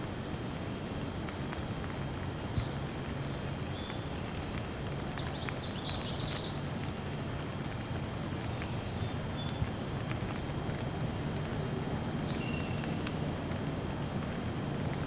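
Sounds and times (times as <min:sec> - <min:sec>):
steady rainfall: 0:00.0 - 0:15.0
songbird chirping: 0:02.2 - 0:06.8, 0:12.3 - 0:13.1.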